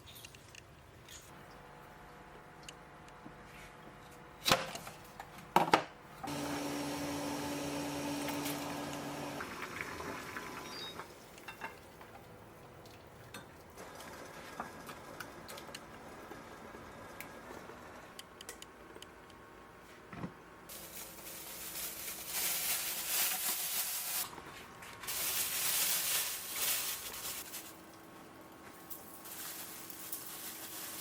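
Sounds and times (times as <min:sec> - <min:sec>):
small appliance motor humming: 0:06.2 - 0:09.6.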